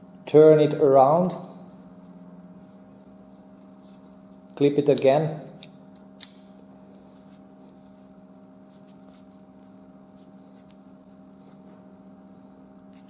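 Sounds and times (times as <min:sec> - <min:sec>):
steady low hum: 0:00.0 - 0:13.0
rope rustling: 0:01.8 - 0:04.5, 0:06.7 - 0:11.8.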